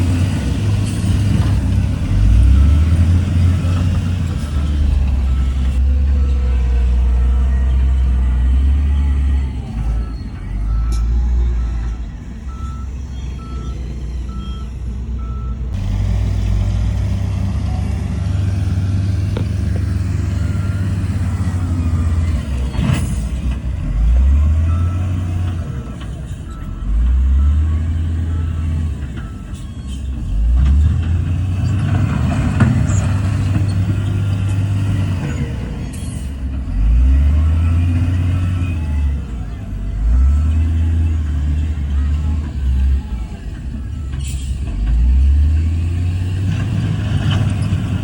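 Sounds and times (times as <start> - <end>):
heavy machinery diesel engines: 0.0 - 48.0
reversing beeper: 2.1 - 15.8, 17.5 - 30.5
engine revving up: 36.6 - 43.0.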